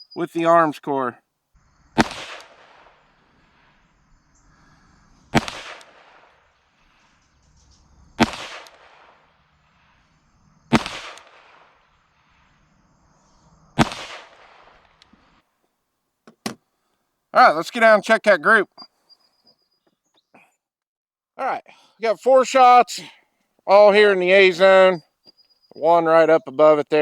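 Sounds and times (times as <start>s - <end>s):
pistol shots echoing: 5.4s - 6.1s.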